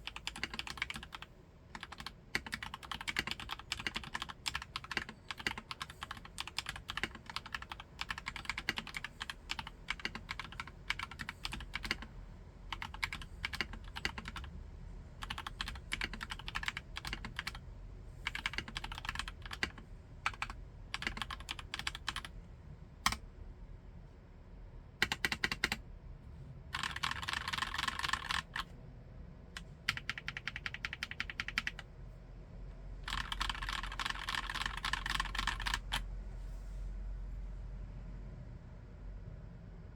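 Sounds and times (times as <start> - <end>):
mechanical keyboard typing: 0.0 - 12.1, 12.7 - 14.5, 15.2 - 17.6, 18.2 - 22.3, 23.0 - 23.2, 25.0 - 25.8, 26.7 - 28.7, 29.6 - 31.8, 33.0 - 36.0.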